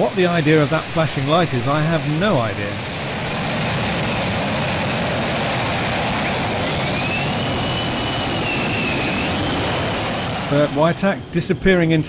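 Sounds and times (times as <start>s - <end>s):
faint high whine: 0.0s - 12.0s.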